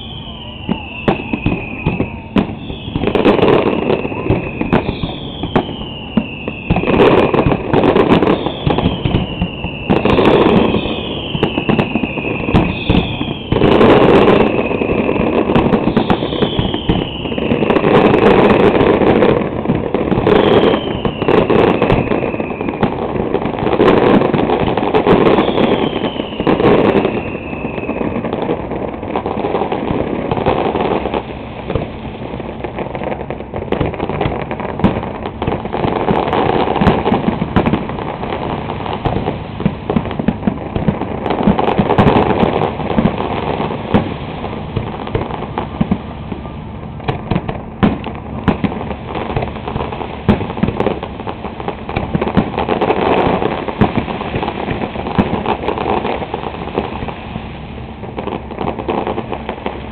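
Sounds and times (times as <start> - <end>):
falling whistle tones: 0.0 - 7.1, 8.2 - 13.7, 14.5 - 17.7, 20.3 - 22.9, 25.2 - 28.2.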